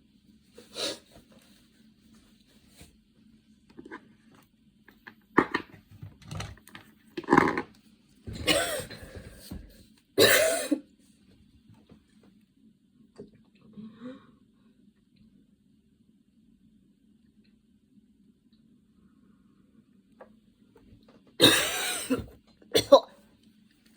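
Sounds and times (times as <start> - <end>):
woman coughing: 8.4 - 9.0, 10.2 - 10.8, 21.4 - 23.2.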